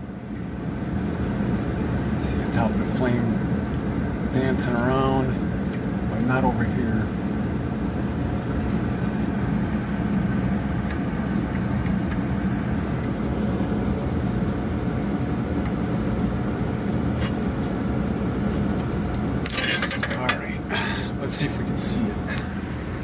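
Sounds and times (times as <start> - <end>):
gas furnace blower rushing: 0.0 - 23.0
low hum: 0.0 - 23.0.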